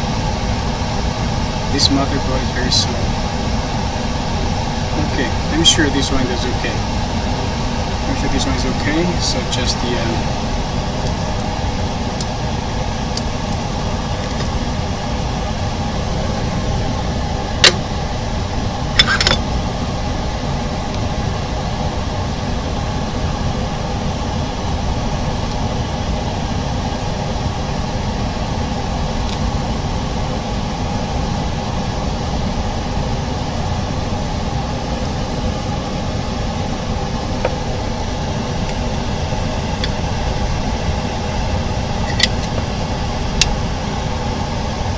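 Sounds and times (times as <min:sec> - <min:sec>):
motor humming and whirring: 0:00.0 - 0:44.9.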